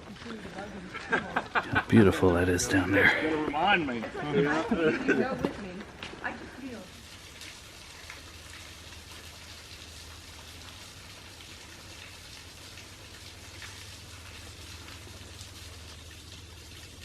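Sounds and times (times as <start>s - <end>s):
small waterfall splashing: 4.4s - 17.0s.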